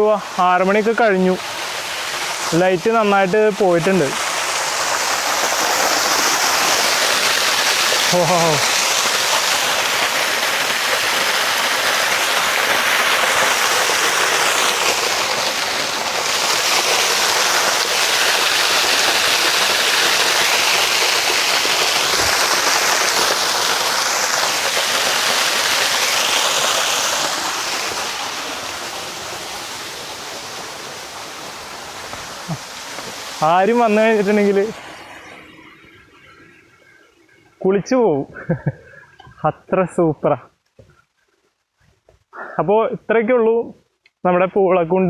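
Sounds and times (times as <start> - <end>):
waterfall rushing: 0.0 - 37.6.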